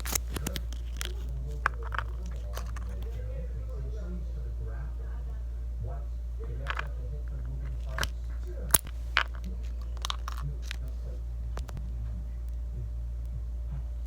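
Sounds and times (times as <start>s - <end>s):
hard candy cracking and crunching: 0.0s - 3.1s, 7.7s - 10.9s
steady low hum: 0.0s - 14.0s.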